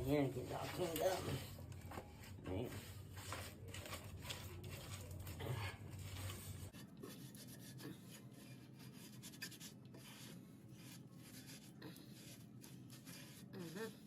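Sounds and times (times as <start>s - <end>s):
scrubbing floor by hand: 0.0s - 7.7s.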